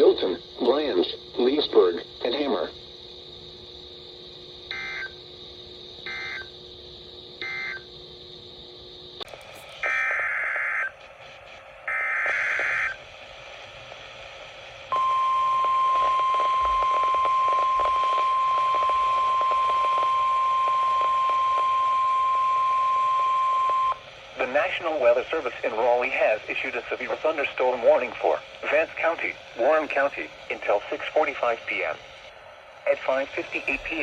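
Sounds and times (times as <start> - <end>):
steady alarm tone: 4.6 - 5.3, 6.0 - 6.6, 14.9 - 34.0
warbling data bursts: 24.4 - 34.0.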